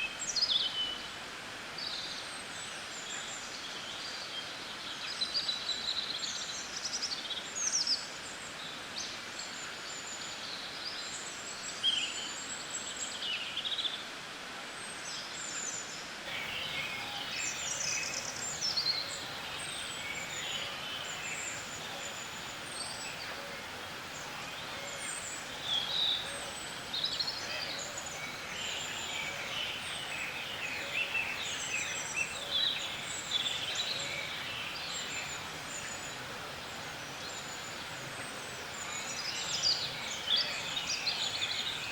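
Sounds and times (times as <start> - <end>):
steady background hiss: 0.0 - 41.9
birds chirping and singing: 16.3 - 41.9.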